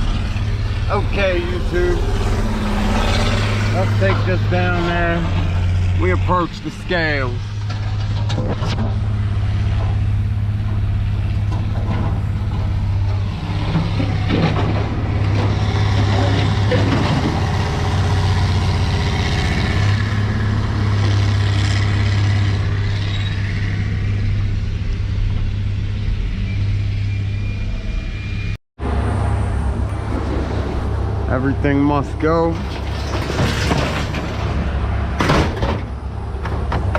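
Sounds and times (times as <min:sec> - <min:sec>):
truck engine running: 0:00.0 - 0:27.6
road noise: 0:00.0 - 0:36.9.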